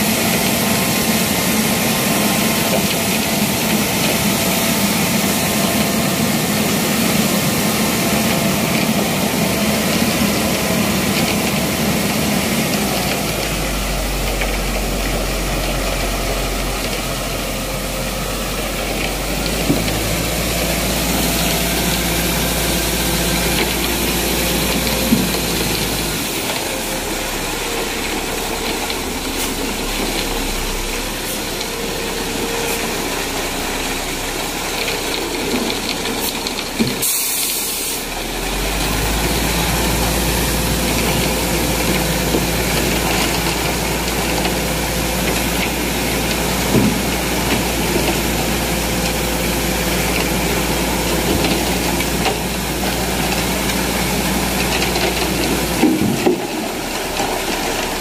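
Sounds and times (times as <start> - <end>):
engine running: 0.0 - 58.0
hiss: 36.8 - 40.4.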